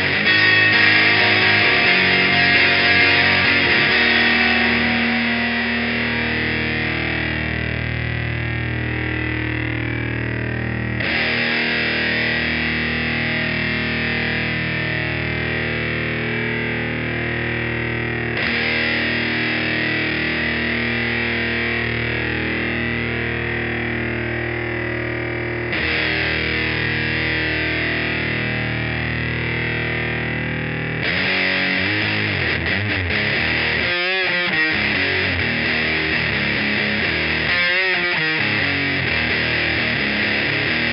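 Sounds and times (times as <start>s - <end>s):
distorted electric guitar chords: 0.0s - 40.9s.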